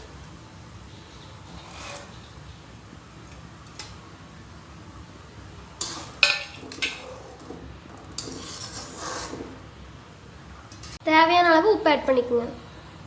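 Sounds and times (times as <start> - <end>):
metal utensils clinking on pan: 5.8 - 9.5.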